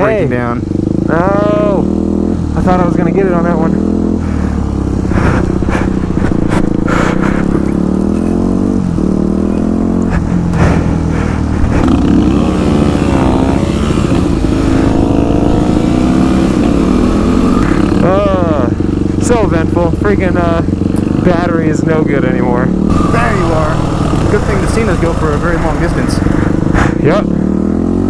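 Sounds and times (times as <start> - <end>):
motorcycle engine idling: 0.0 - 28.0.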